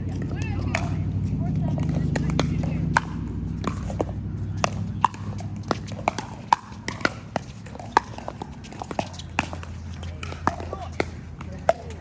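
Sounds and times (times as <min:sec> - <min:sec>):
paddles striking plastic balls: 0:00.0 - 0:12.0.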